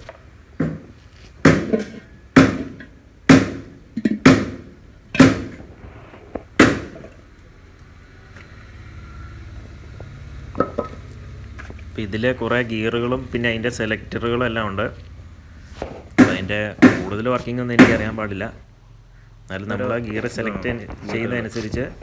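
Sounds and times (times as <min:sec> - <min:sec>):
hammer striking metal: 0:01.5 - 0:05.6, 0:16.2 - 0:18.2.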